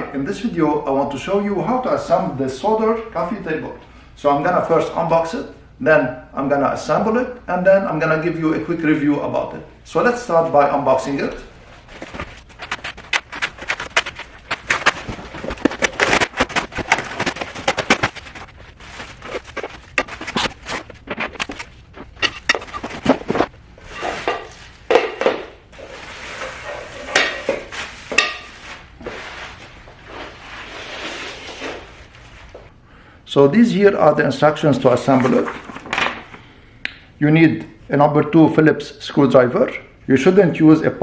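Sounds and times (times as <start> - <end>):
scraping: 10.9 - 32.7
cardboard crackling and rustling: 11.0 - 32.7.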